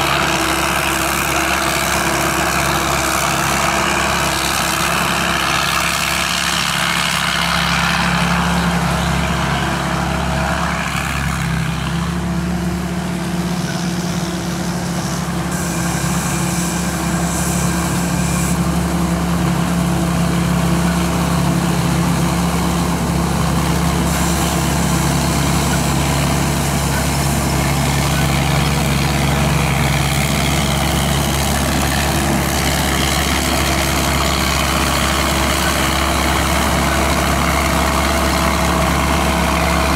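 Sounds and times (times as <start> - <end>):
combine harvester engine droning: 0.0 - 39.9.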